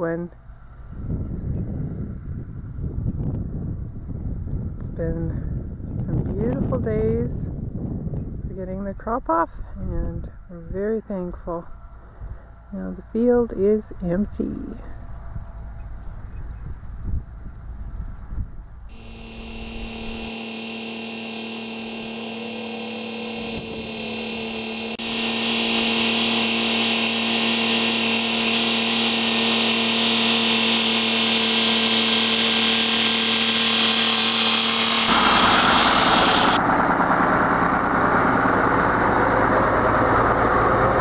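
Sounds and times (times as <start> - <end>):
wind buffeting microphone: 0.9 - 11.6
insects chirping: 14.5 - 36.6
machine humming: 18.9 - 41.0.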